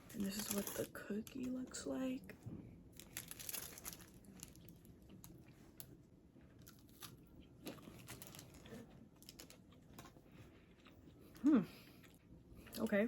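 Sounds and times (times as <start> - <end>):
cookie crunching when chewed: 3.0 - 13.0.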